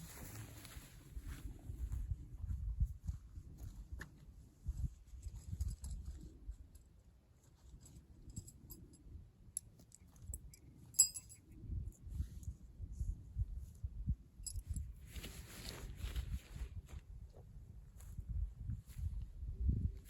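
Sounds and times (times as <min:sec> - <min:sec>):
low rumble on microphone: 0:00.0 - 0:06.7, 0:11.6 - 0:20.0
tent poles and pegs clinking: 0:05.2 - 0:12.0, 0:14.4 - 0:16.2.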